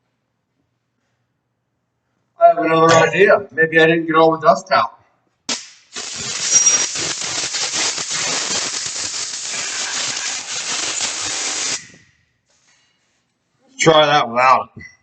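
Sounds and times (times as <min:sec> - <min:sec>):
air blow gun hissing: 0:05.5 - 0:12.0.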